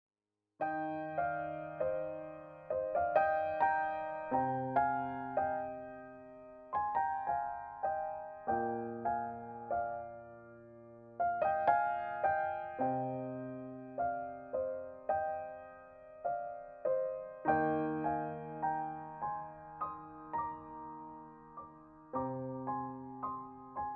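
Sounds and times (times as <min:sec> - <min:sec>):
slow gentle piano: 0:00.6 - 0:23.9.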